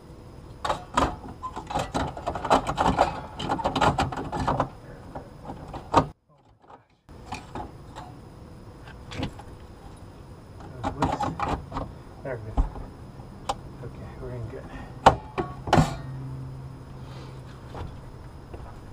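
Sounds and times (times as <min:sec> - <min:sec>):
metal clicking and rattling: 0:00.6 - 0:08.2.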